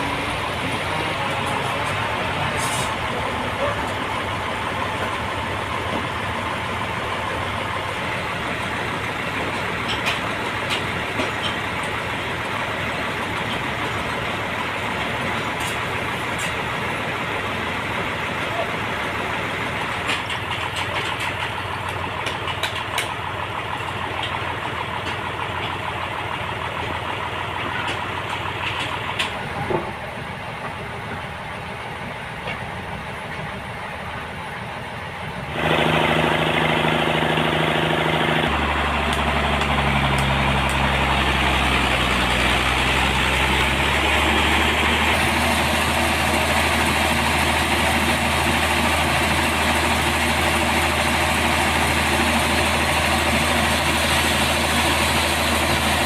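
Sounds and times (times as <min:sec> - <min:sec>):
deep engine hum: 0:00.0 - 0:56.0
sawmill machinery running: 0:00.0 - 0:56.0.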